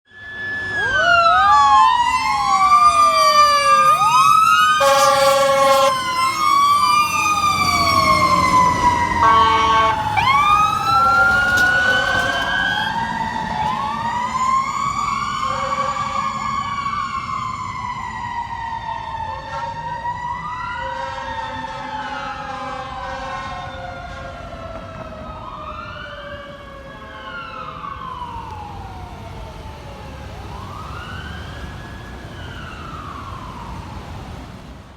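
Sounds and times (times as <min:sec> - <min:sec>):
sirens wailing: 0:00.1 - 0:34.7
mechanical siren winding down: 0:00.2 - 0:15.5
fire truck air horn blasts: 0:04.7 - 0:14.4, 0:15.4 - 0:16.5, 0:19.3 - 0:20.0, 0:20.8 - 0:24.7.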